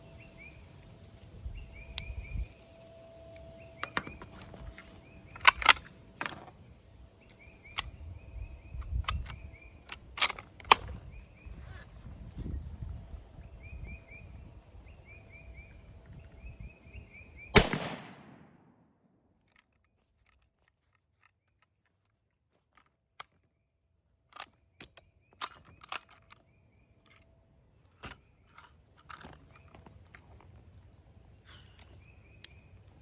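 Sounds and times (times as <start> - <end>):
metallic rifle bolt clicks: 2.0 - 6.6, 7.2 - 11.0, 17.6 - 18.5, 24.3 - 27.4
rifle shot: 17.6 - 18.8.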